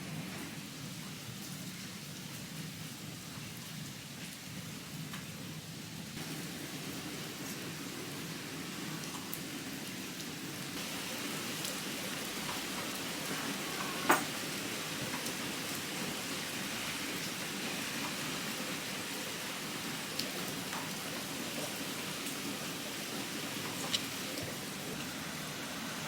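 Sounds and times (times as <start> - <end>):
steady rain falling: 0.0 - 26.0
water drips: 10.2 - 25.2.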